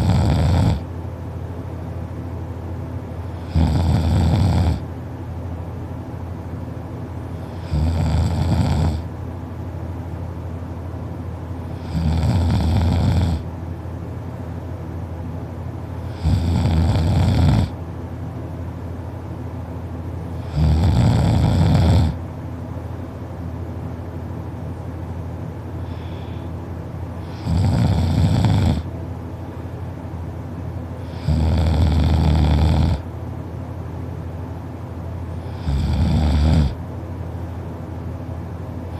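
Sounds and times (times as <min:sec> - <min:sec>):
person snoring loudly: 0:00.0 - 0:00.8, 0:03.4 - 0:04.8, 0:07.4 - 0:09.0, 0:11.8 - 0:13.4, 0:16.1 - 0:17.8, 0:20.4 - 0:22.2, 0:27.2 - 0:28.9, 0:31.0 - 0:33.1, 0:35.4 - 0:36.8
steady low hum: 0:00.0 - 0:38.9.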